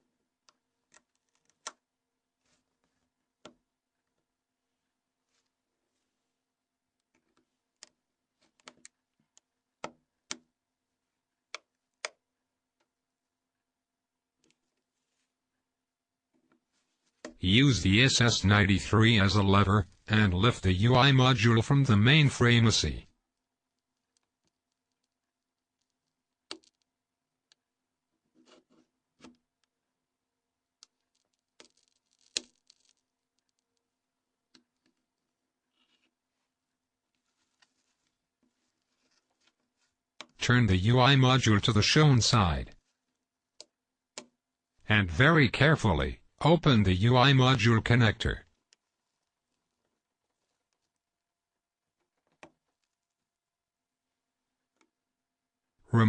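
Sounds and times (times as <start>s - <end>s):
faint low hum: 16.8s - 23.3s
plastic tool clicking and scraping: 30.8s - 33.9s.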